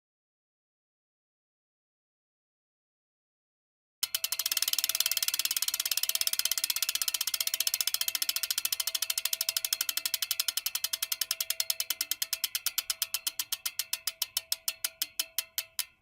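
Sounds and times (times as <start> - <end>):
bicycle freewheel ticking: 4.0 - 16.0.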